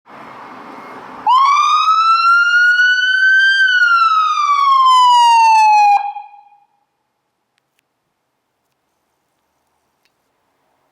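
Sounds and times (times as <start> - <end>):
ambulance siren wailing: 1.2 - 6.7
quiet steady noise: 6.5 - 10.9.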